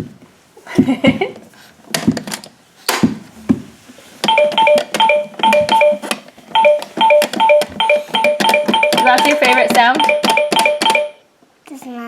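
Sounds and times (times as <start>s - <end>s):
toy electronic jingle: 4.3s - 11.2s.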